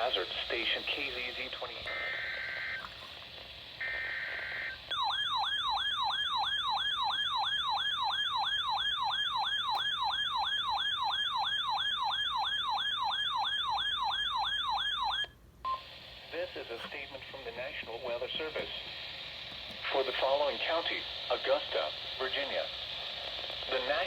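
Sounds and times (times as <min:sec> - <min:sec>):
falling-pitch alarm siren: 0:03.8 - 0:15.3.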